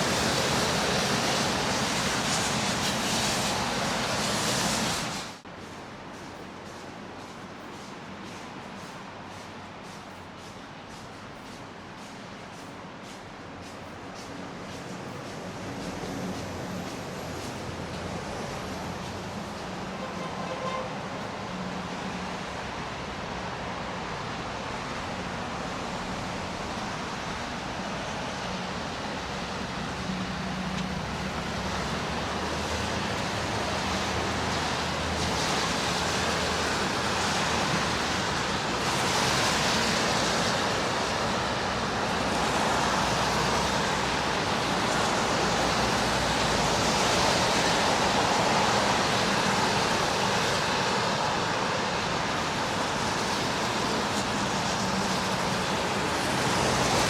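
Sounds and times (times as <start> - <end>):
vehicle engines and tyre hiss: 0.0 - 57.0.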